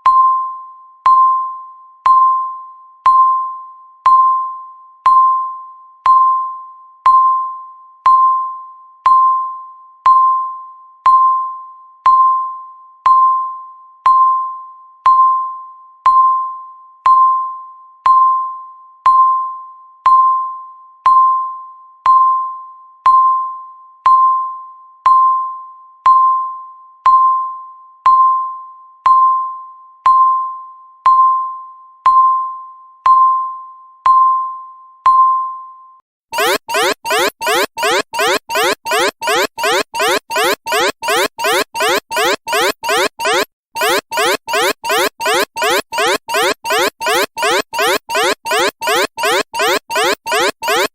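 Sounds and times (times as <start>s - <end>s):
timer beeps: 36.4s - 50.9s.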